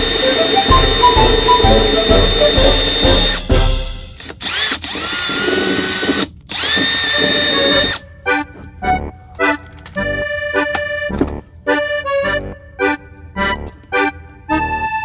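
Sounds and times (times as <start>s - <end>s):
cordless drill motor whining: 0.0s - 3.5s, 4.2s - 8.0s.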